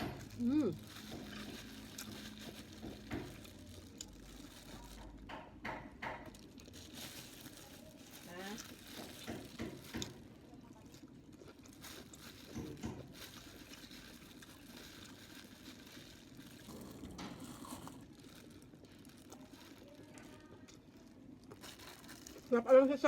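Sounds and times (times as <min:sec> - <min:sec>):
person chewing: 0:10.8 - 0:19.8.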